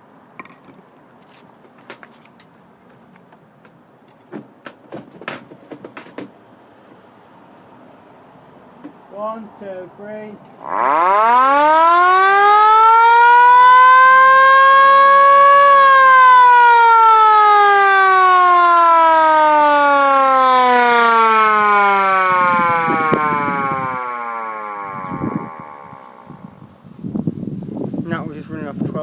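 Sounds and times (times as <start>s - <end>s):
air raid siren wailing: 10.6s - 26.8s.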